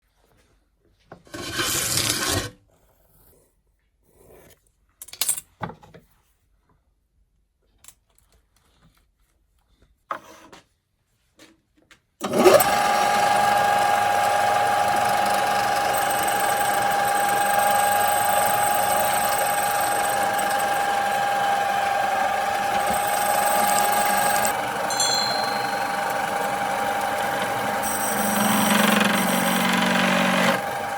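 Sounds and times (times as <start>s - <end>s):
electric power tool whining: 12.2s - 30.9s.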